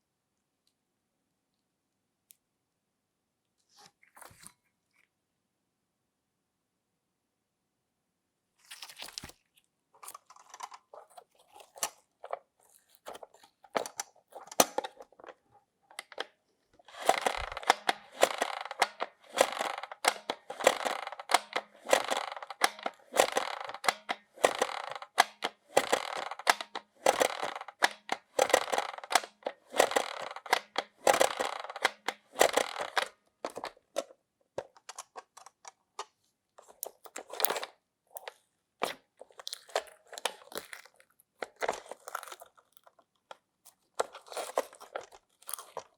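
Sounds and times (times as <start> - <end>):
slime squishing and popping: 38.8 - 43.0.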